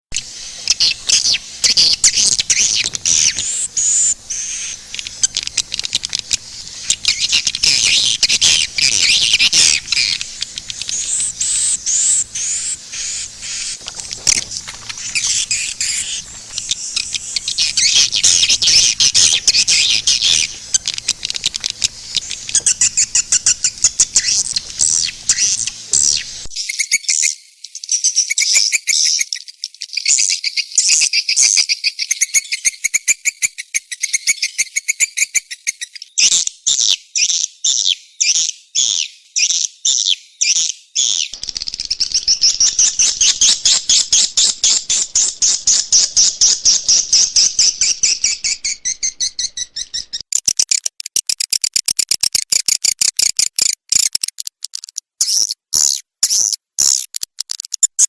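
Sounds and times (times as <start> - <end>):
high-pitched twittering chirps: 0.1 - 27.2, 41.4 - 50.2.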